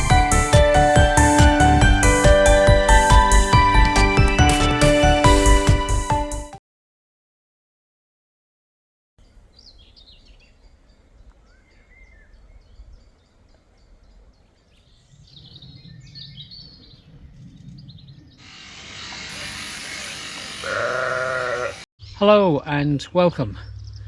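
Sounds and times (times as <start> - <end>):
small birds chirping: 9.2 - 20.8, 23.0 - 24.0
sheep bleating: 20.6 - 21.8.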